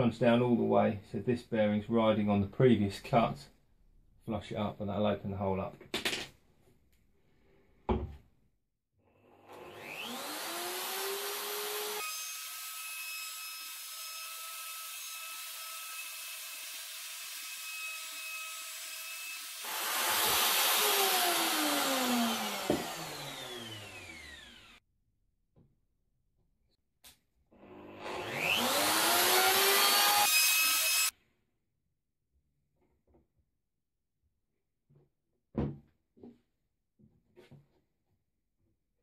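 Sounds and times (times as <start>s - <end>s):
router cutting plywood: 9.4s - 24.8s, 27.6s - 31.1s
router motor whine: 9.4s - 24.8s, 27.6s - 31.1s.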